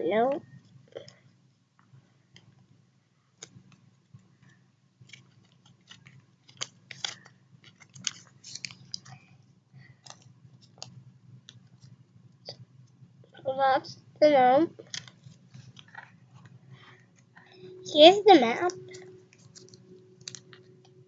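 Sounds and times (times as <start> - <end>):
paper crinkling: 3.4 - 9.2, 9.9 - 12.0, 14.8 - 17.3, 18.6 - 20.8.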